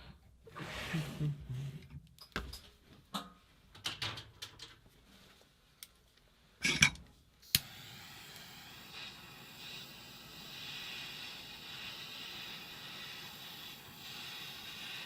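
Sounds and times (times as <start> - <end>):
steady gas hiss: 6.6 - 15.0.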